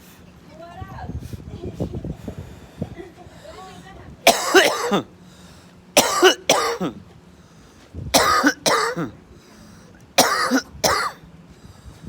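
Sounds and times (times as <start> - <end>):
person coughing with groan: 4.3 - 5.1, 6.0 - 7.0, 8.1 - 9.2, 10.2 - 11.2.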